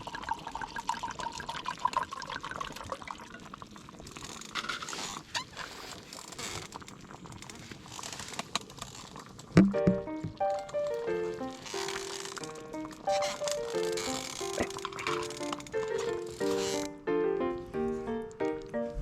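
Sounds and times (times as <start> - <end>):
liquid bubbling in a pot: 0.0 - 9.8
small crackles and ticks: 1.5 - 9.6, 10.2 - 17.0.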